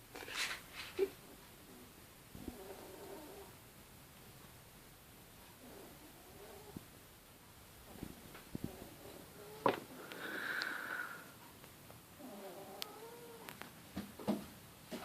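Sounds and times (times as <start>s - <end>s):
puppy snoring: 2.4s - 3.5s, 5.6s - 6.8s, 12.2s - 13.4s
faint clicks: 9.6s - 10.8s, 12.7s - 13.7s.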